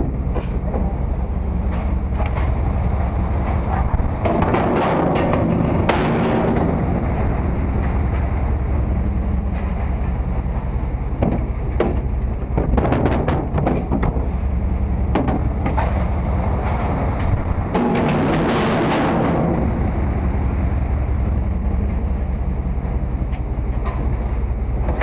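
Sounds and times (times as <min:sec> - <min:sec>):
low engine drone: 0:00.0 - 0:25.0
knocks and rattles: 0:03.4 - 0:08.4, 0:11.2 - 0:14.4, 0:15.1 - 0:20.0.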